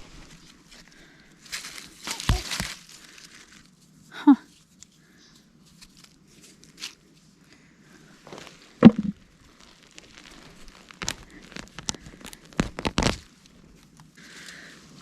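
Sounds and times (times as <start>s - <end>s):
soil being dug by hand: 1.5s - 3.0s, 8.2s - 14.6s.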